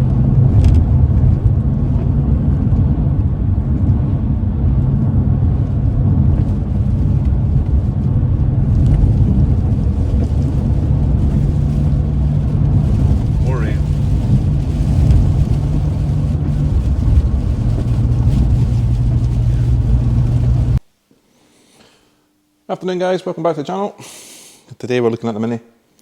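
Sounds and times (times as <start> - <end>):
tyre and road noise: 0.0 - 20.8
steady low hum: 0.0 - 21.0.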